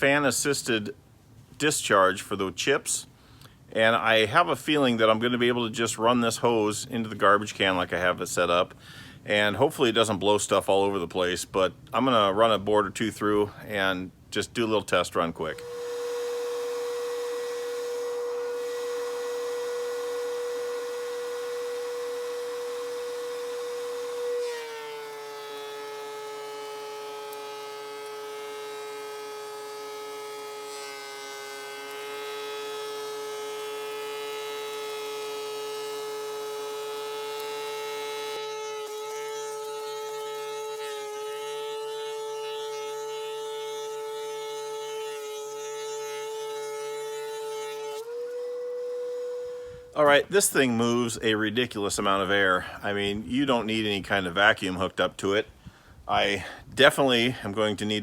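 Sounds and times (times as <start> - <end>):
board being planed: 15.6 - 49.5
thickness planer whining: 15.6 - 51.3.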